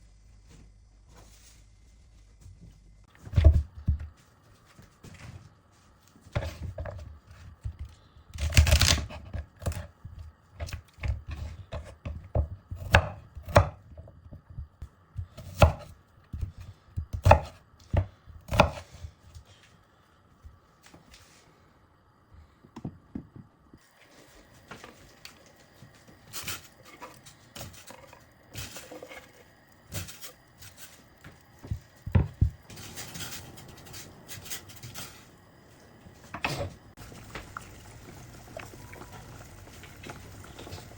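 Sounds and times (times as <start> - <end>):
knife chopping on cutting board: 17.1 - 18.8.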